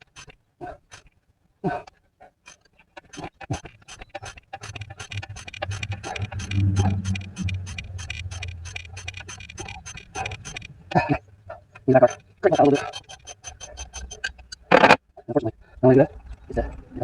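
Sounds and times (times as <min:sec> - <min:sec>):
ratchet wrench clicking: 0:03.1 - 0:10.9, 0:12.0 - 0:14.4
low steady hum: 0:04.7 - 0:13.0.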